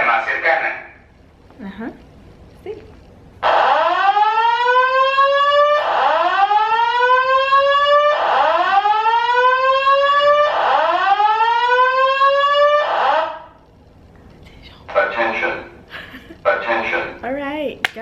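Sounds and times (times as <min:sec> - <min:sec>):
fire alarm whoop tone: 0:03.4 - 0:13.6.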